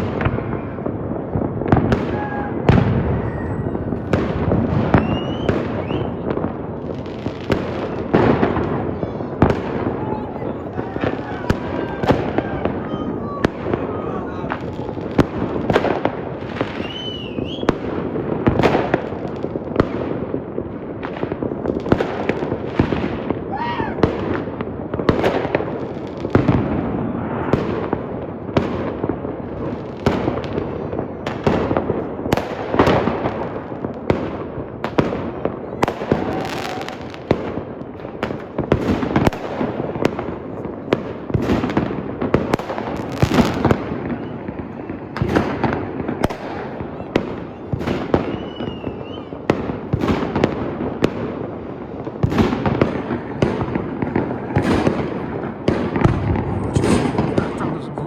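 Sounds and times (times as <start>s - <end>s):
fireworks banging: 0.0s - 58.0s
whistling rocket: 1.9s - 6.4s, 7.5s - 14.4s, 16.5s - 17.9s, 35.7s - 37.2s, 43.1s - 49.6s.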